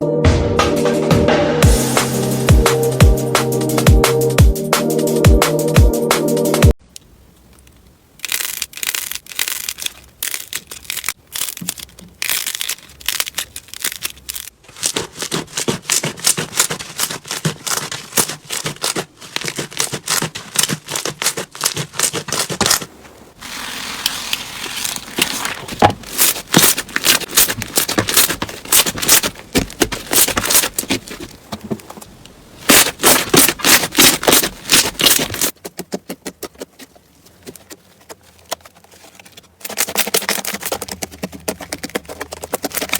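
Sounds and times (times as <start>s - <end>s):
slime crackling and popping: 8.2s - 22.9s, 24.0s - 31.3s, 32.7s - 35.9s.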